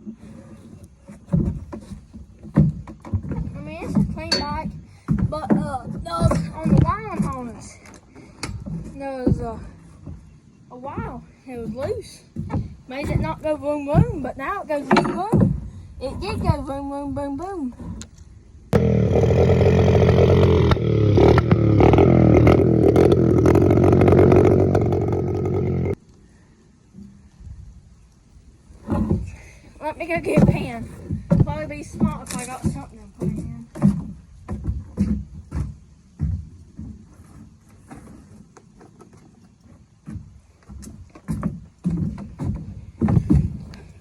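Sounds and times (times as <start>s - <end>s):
thumps and knocks of handling: 0.0s - 16.8s, 30.2s - 44.0s
dirt bike engine revving: 18.8s - 26.0s.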